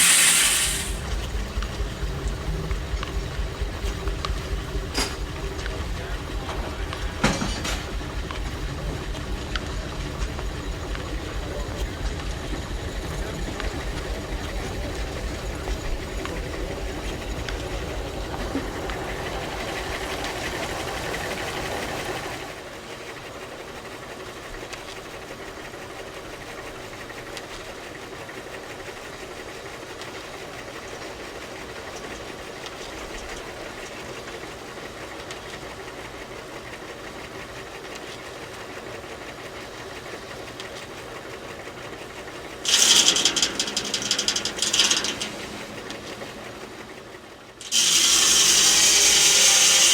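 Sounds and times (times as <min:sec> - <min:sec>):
saw blade cutting wood: 0:00.0 - 0:01.2, 0:42.7 - 0:46.4, 0:47.6 - 0:49.9
steam engine pulsing: 0:00.0 - 0:49.9.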